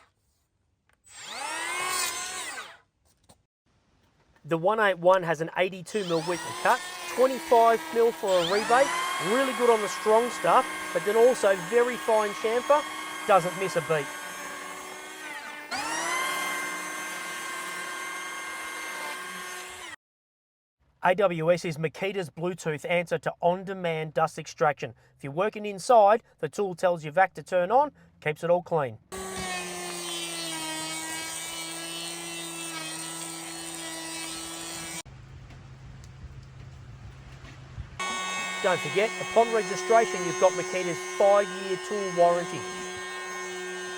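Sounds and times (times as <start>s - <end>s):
electric planer whining: 1.1s - 2.8s, 5.9s - 20.0s, 29.2s - 35.0s, 38.0s - 43.9s.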